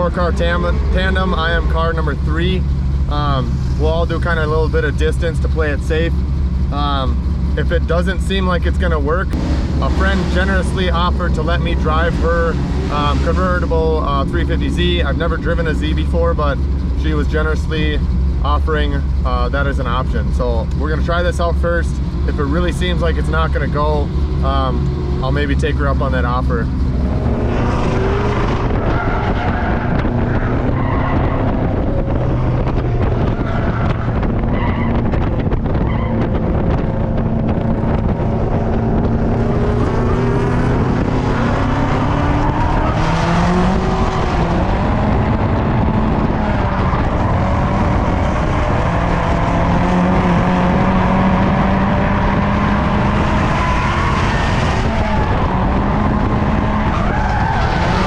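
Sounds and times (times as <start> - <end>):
other cars running nearby: 0.0 - 58.0
turbocharged car engine revving: 0.0 - 58.0
tires skidding: 23.2 - 58.0.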